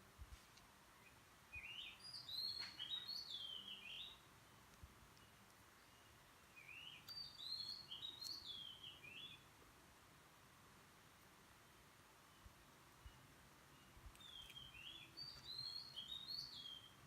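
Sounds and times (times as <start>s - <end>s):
songbird whistling: 1.0s - 4.2s, 5.8s - 9.4s, 13.8s - 17.0s.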